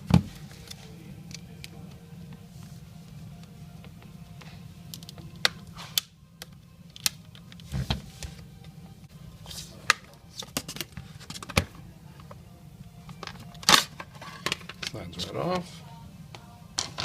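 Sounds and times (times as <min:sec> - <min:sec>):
plastic clicks and snaps: 0:04.9 - 0:07.7.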